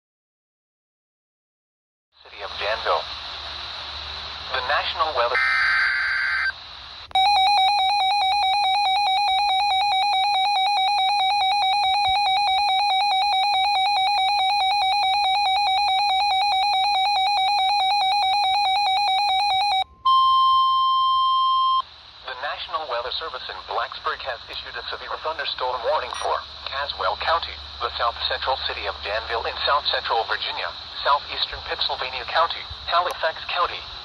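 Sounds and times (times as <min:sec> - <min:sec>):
data screech: 0:05.3 - 0:06.6, 0:26.1 - 0:26.4
fast-warbling electronic alarm: 0:05.3 - 0:06.6, 0:07.2 - 0:19.9.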